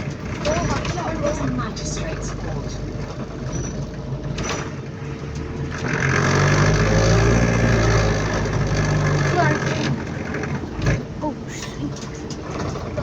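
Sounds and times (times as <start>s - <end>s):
bus engine rattling: 0.0s - 13.0s.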